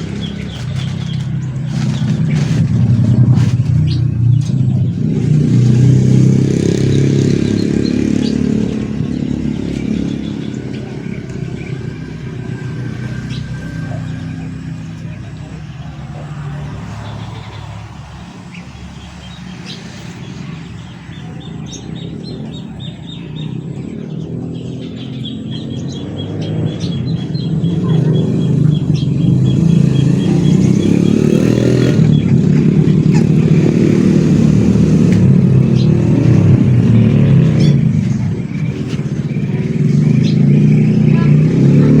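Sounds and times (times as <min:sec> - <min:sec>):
birds chirping: 0:00.0 - 0:42.0
engine running: 0:00.0 - 0:42.0.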